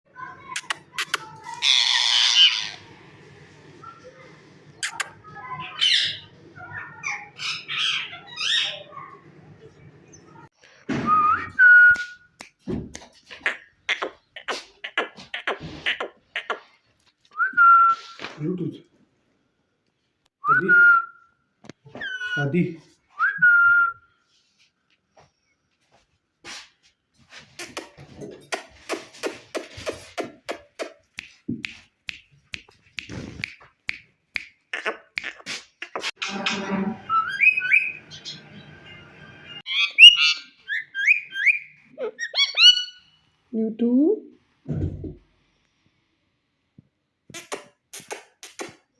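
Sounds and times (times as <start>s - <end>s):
parakeet calling and whistling: 1.6s - 2.9s, 4.8s - 9.2s, 34.8s - 43.2s
parakeet clicking chatter: 4.8s - 6.3s, 34.6s - 36.2s
parakeet whistling: 37.0s - 43.2s.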